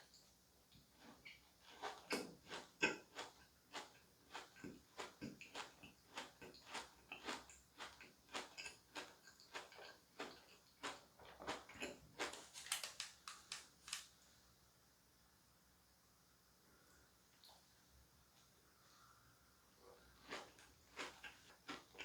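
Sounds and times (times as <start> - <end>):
chewing cake: 0.8 - 12.8, 19.9 - 22.0.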